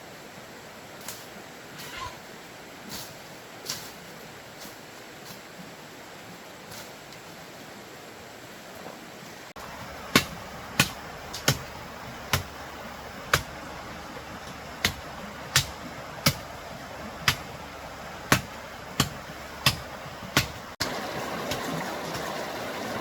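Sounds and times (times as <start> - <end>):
blade chopping bamboo: 9.7 - 12.6, 13.2 - 13.7, 14.4 - 16.6, 17.2 - 17.5, 18.2 - 20.8.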